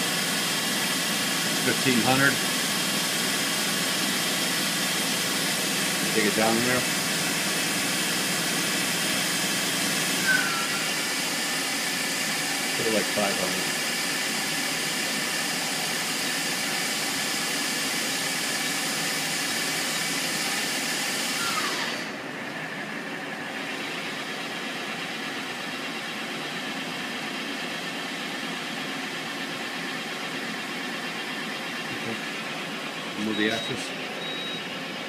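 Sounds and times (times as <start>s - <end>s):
lathe running with hiss and whines: 0.0s - 35.0s.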